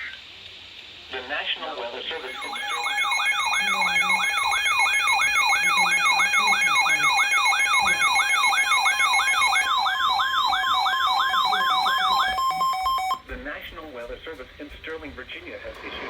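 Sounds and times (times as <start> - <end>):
electronic whooping alarm: 2.2 - 13.2.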